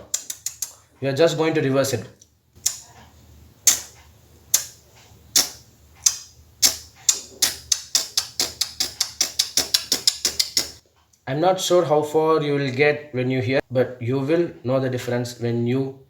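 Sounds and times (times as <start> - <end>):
beatboxed hissy hi-hat clicks: 0.0 - 0.8, 3.6 - 10.8.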